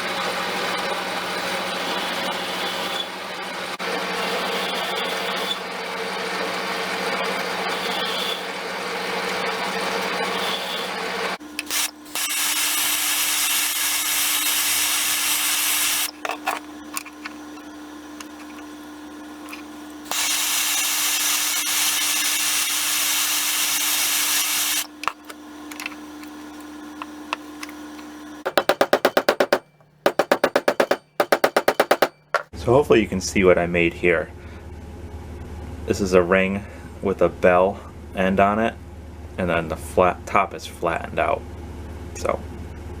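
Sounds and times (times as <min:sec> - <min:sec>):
clicks and handling: 0:16.1 - 0:18.7, 0:24.9 - 0:32.5
sharp evenly spaced knocks: 0:28.5 - 0:32.5.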